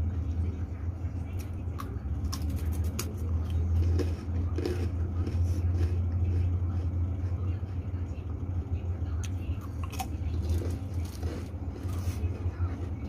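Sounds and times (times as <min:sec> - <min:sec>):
low hum: 0:00.0 - 0:13.0
crackers crunching: 0:01.2 - 0:07.4, 0:09.2 - 0:13.0.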